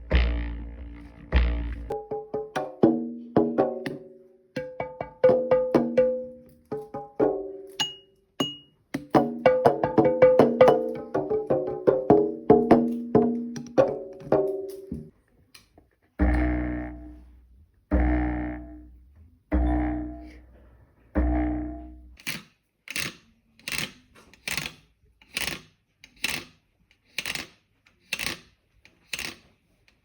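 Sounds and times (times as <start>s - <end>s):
homemade instrument pitched notes: 0.0s - 8.8s, 16.2s - 22.2s.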